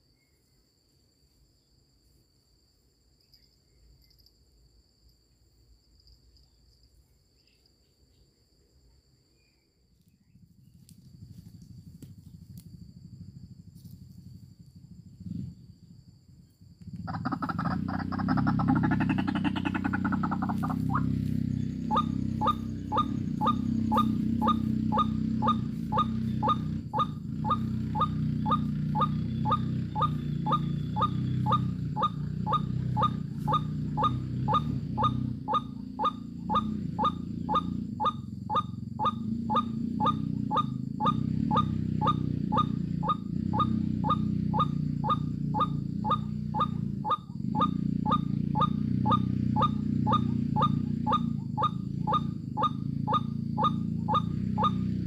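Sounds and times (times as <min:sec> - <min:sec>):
steady low rumble: 0:10.2 - 0:54.5
bird whistling call: 0:17.2 - 0:54.9.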